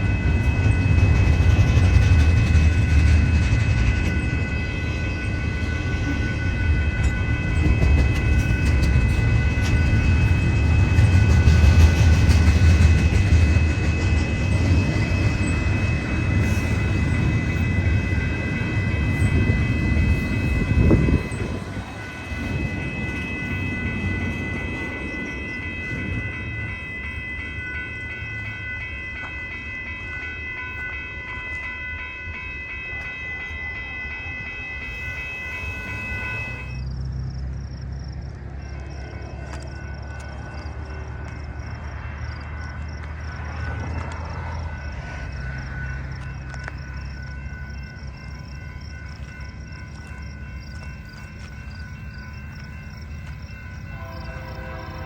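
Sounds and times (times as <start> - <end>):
high whine: 0.0 - 55.0
train wheels rumbling on rails: 0.0 - 55.0.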